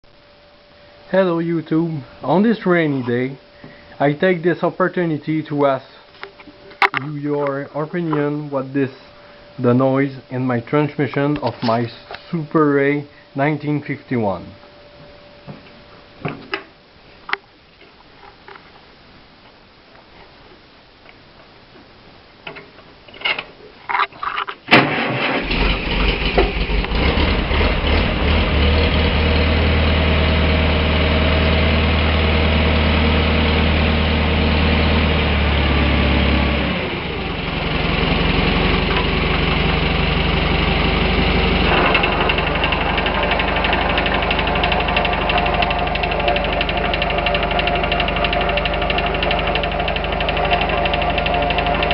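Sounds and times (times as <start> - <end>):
strange transmission noise: 0.0 - 24.7, 36.8 - 51.9
tractor engine running: 24.9 - 51.9.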